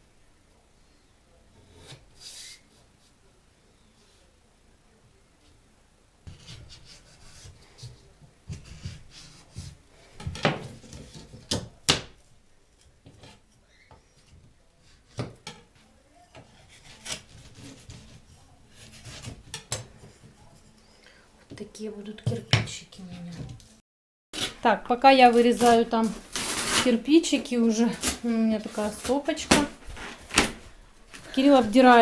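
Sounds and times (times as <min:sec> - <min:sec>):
drywall scraping and rubbing: 0:01.5 - 0:02.8, 0:06.2 - 0:11.5, 0:16.4 - 0:20.8, 0:24.4 - 0:32.0
drywall cracking: 0:16.3 - 0:20.0, 0:24.4 - 0:32.0.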